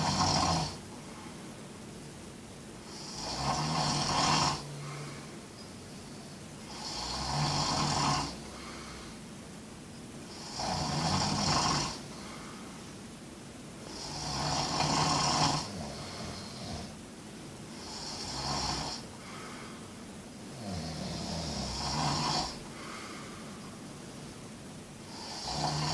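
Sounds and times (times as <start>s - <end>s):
person snoring: 0.0s - 0.8s, 2.9s - 5.3s, 6.7s - 9.2s, 10.3s - 12.7s, 13.8s - 17.0s, 17.7s - 19.7s, 20.5s - 23.4s, 25.0s - 25.9s.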